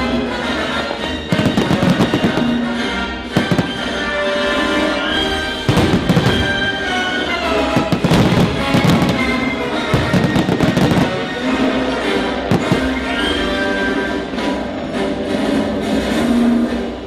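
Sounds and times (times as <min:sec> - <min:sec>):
loud orchestral music: 0:00.0 - 0:17.0
fireworks bangs: 0:01.3 - 0:04.8, 0:05.5 - 0:13.6.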